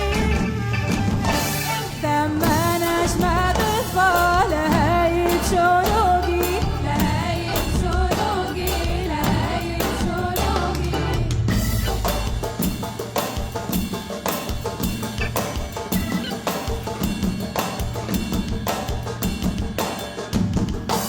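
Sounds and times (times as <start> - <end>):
bass and percussion accompaniment: 0.0 - 21.0.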